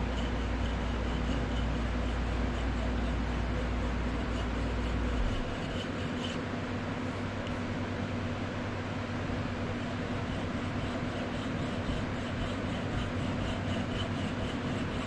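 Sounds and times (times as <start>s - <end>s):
hand saw strokes: 0.0s - 6.5s, 9.5s - 15.0s
steady background hum: 0.0s - 15.0s.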